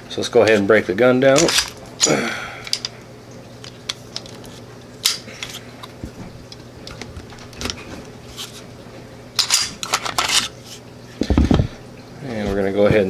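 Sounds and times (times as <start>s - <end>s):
metal scraping: 9.4s - 10.8s.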